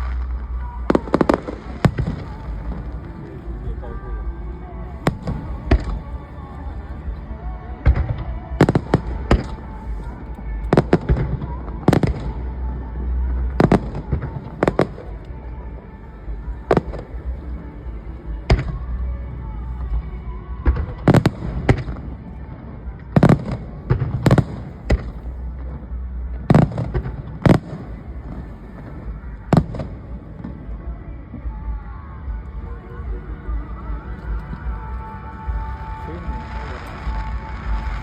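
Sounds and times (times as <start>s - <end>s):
fireworks bangs: 0.0s - 4.0s, 5.0s - 6.8s, 7.8s - 12.5s, 20.6s - 25.8s, 26.4s - 30.8s, 35.4s - 38.0s
low rumble: 0.0s - 38.0s.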